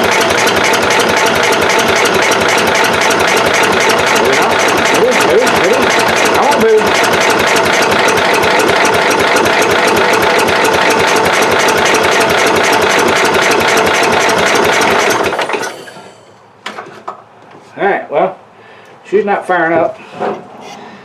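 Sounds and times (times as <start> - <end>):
engine cranking without starting: 0.0 - 16.3.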